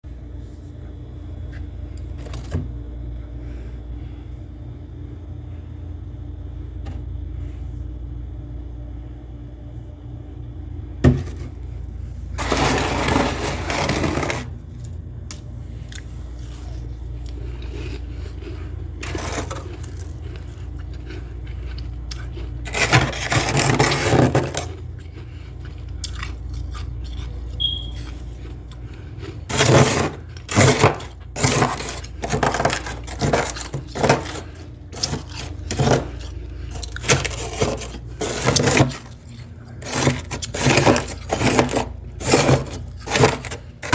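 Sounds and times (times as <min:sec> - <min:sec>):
steady low hum: 0:00.0 - 0:43.9
frost being scraped and crunched: 0:12.4 - 0:14.6, 0:16.3 - 0:24.8, 0:29.4 - 0:43.9.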